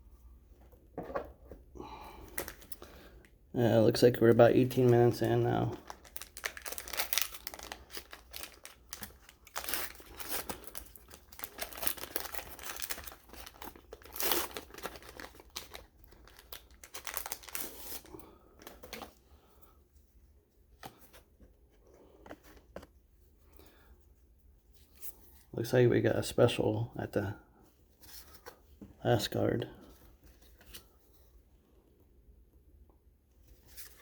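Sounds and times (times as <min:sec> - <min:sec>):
wrapper tearing and crinkling: 0:05.2 - 0:18.2.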